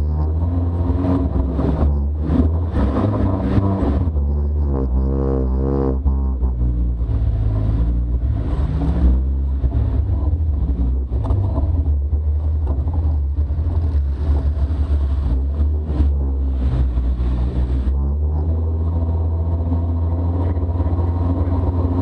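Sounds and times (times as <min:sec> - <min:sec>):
engines revving: 0:00.0 - 0:22.0.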